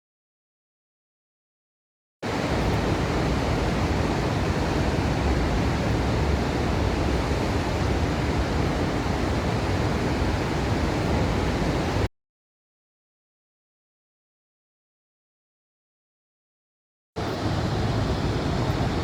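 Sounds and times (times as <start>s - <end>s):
rushing roar of river rapids: 2.2s - 12.1s, 17.2s - 19.0s
wind rumble on microphone: 2.2s - 12.1s, 17.2s - 19.0s.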